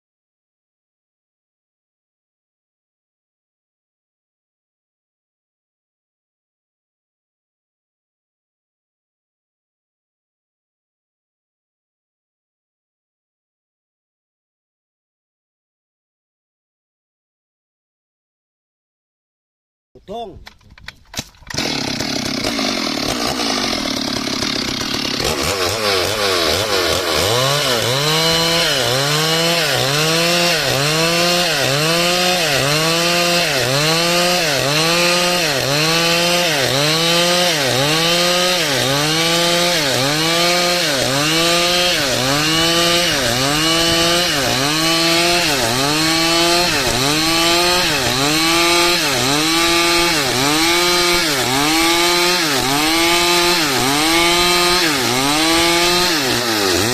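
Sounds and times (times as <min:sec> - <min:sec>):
chainsaw cutting wood: 0:20.7 - 0:56.9.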